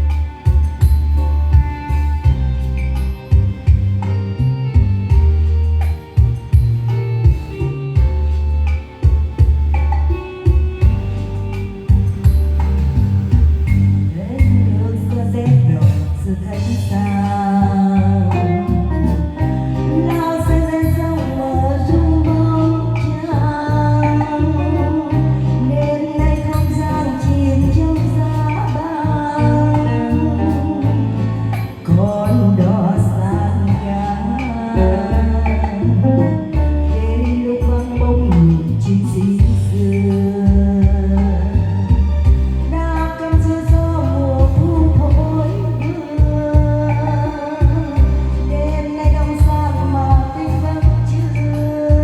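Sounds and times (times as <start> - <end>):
guitar and bass: 0.0 - 52.0
person singing: 14.0 - 52.0.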